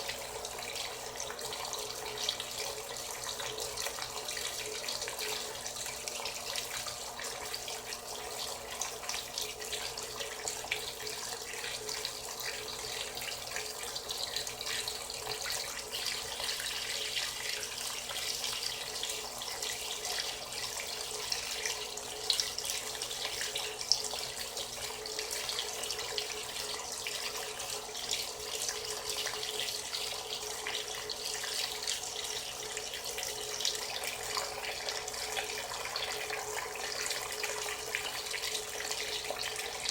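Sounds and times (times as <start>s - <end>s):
water pouring into washing machine: 0.0s - 39.9s.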